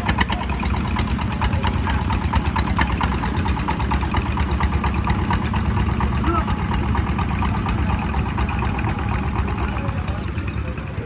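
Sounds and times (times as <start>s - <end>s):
boat engine running: 0.0s - 11.0s.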